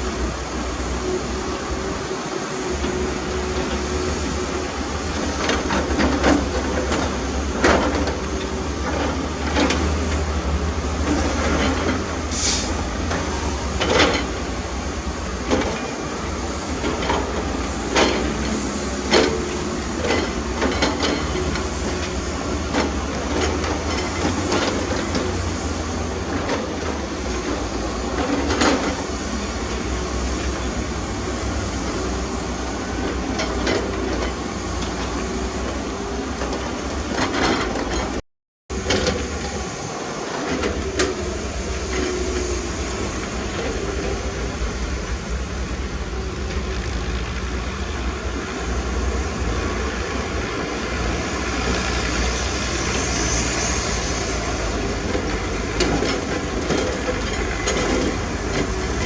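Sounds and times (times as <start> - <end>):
heavy machinery rumbling: 0.0 - 59.0.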